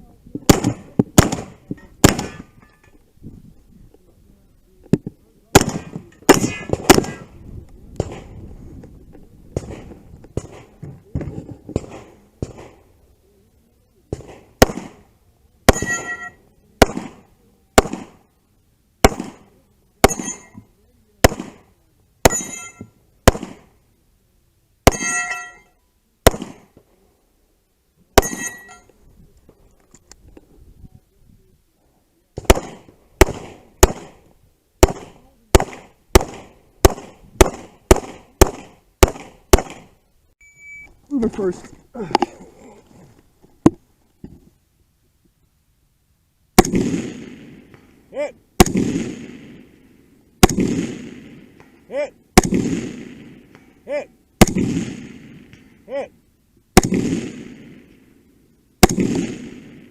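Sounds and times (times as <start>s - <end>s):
gunshots: 0.5s - 2.6s, 5.5s - 7.4s, 8.0s - 8.4s, 9.5s - 12.8s, 14.1s - 15.1s, 15.7s - 18.2s, 19.0s - 20.6s, 21.2s - 23.8s, 24.8s - 25.5s, 26.2s - 26.8s, 28.2s - 28.8s, 32.4s - 40.0s, 46.6s - 48.0s, 48.6s - 49.8s, 50.4s - 51.8s, 52.4s - 53.7s, 54.4s - 55.8s, 56.8s - 58.1s, 58.8s - 59.9s
steel targets clanging: 15.7s - 16.4s, 20.1s - 20.7s, 22.3s - 22.9s, 24.9s - 25.8s, 28.2s - 28.9s.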